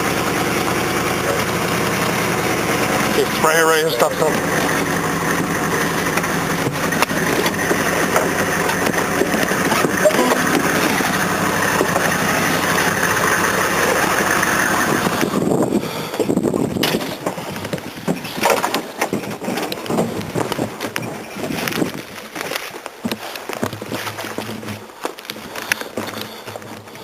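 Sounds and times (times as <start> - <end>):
vehicle engine running: 0.0 - 27.0
knocks and rustling: 16.8 - 27.0.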